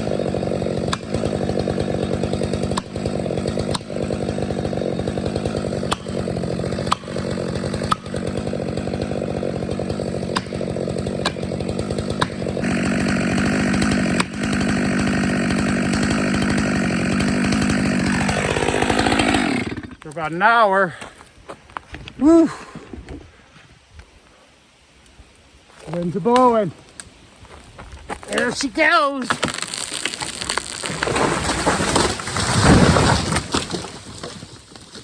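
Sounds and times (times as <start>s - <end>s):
chainsaw cutting tree trunk: 0.0s - 20.1s, 28.3s - 35.0s.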